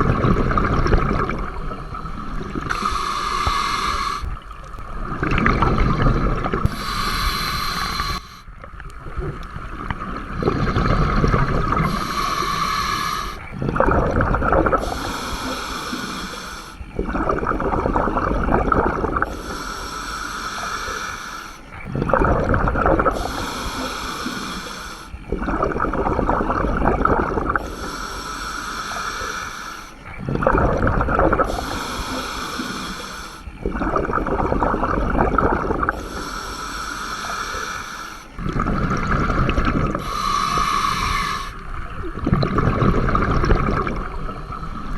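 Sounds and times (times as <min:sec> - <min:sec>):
hissing regulator inhale: 0:00.0 - 0:04.4, 0:06.6 - 0:08.5, 0:10.5 - 0:13.6, 0:14.7 - 0:17.0, 0:19.2 - 0:21.9, 0:23.1 - 0:25.4, 0:27.3 - 0:30.2, 0:31.3 - 0:33.6, 0:35.4 - 0:38.4, 0:39.0 - 0:41.9
gurgle of exhaled bubbles: 0:00.0 - 0:19.6, 0:21.8 - 0:29.4, 0:30.0 - 0:36.6, 0:37.2 - 0:44.9.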